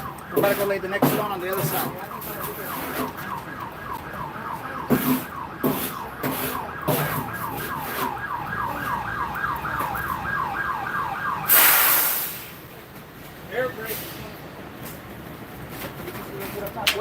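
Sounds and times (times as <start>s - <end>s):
siren yelping: 0.0s - 12.0s.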